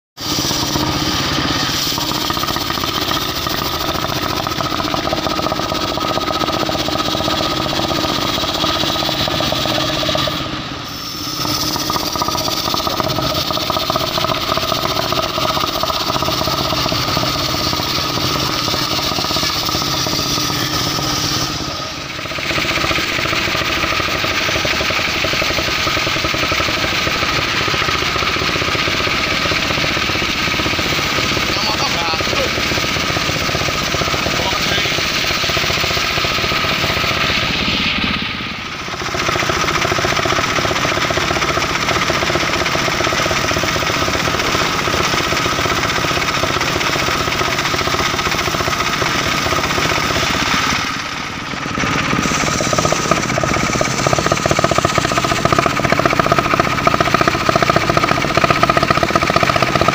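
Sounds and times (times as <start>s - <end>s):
saw whining: 0.2s - 59.9s
sawmill engine running: 0.2s - 59.9s.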